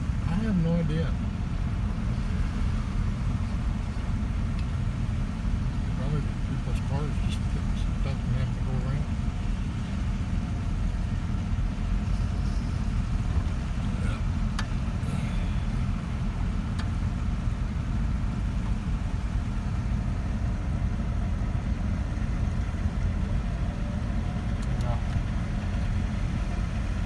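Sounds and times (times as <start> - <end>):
car engine and tyre rumble: 0.0 - 27.0
faint clicks: 24.4 - 25.3.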